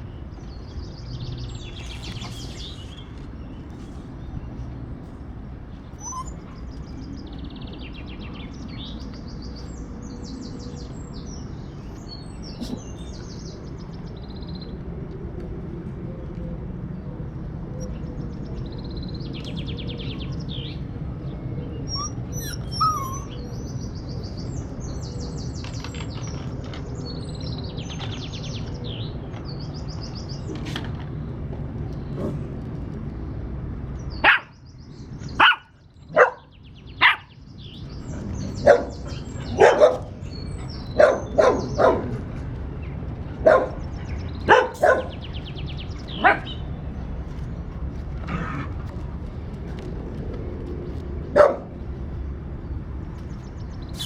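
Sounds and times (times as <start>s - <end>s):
steady background noise: 0.0s - 54.0s
puppies yipping and barking: 5.9s - 7.0s, 21.9s - 23.6s, 37.9s - 42.4s, 43.4s - 46.7s.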